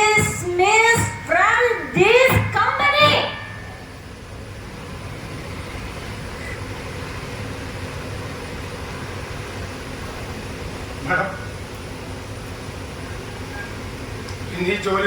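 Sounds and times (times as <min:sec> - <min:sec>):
low hum: 0:00.0 - 0:06.0.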